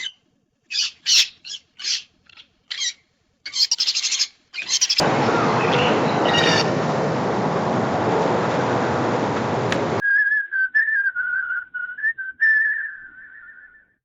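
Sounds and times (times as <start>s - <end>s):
bird calls and chattering: 0.0s - 7.5s
steady rushing noise: 5.0s - 10.0s.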